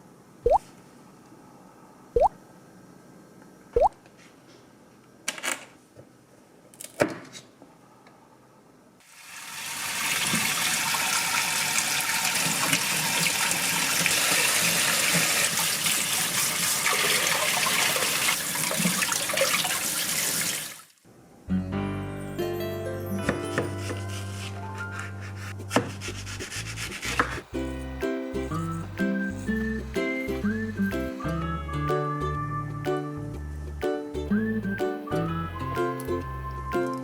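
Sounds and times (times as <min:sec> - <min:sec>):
kitchen tap running: 0:09.1 - 0:20.9.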